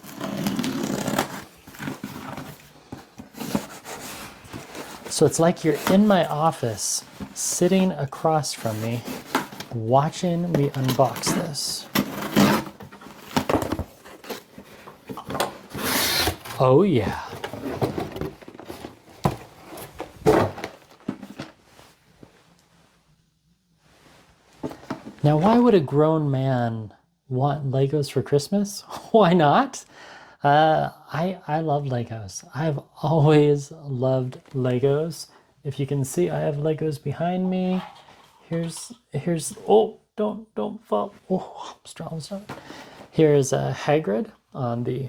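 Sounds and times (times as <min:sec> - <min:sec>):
cardboard box rustling: 0:00.0 - 0:07.6, 0:08.5 - 0:09.8, 0:10.4 - 0:21.6.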